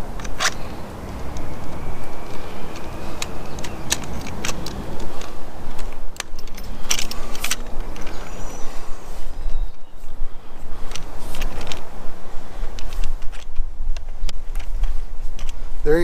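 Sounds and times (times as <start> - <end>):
clicks and light knocks: 0.0 - 8.4, 12.7 - 15.6
steady low rumble: 0.0 - 12.8.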